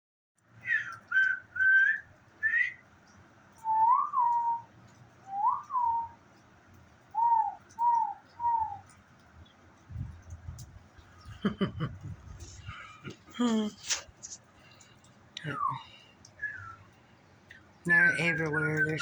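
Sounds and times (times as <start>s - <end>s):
whistled notes: 0.6s - 2.9s, 3.6s - 4.7s, 5.3s - 6.2s, 15.5s - 17.0s, 17.9s - 19.0s.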